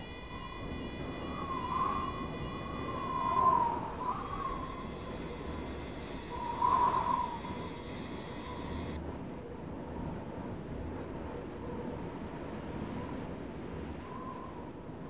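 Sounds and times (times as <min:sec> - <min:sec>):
high thin whine: 0:00.0 - 0:09.0
wavering mid-pitched tone: 0:00.0 - 0:09.0.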